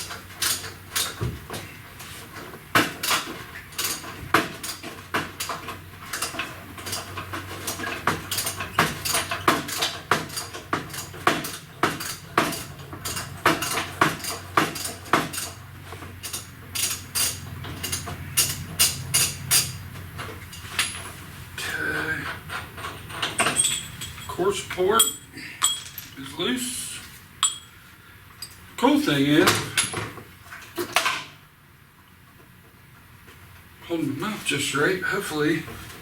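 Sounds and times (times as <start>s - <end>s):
steady low hum: 5.3s - 30.8s.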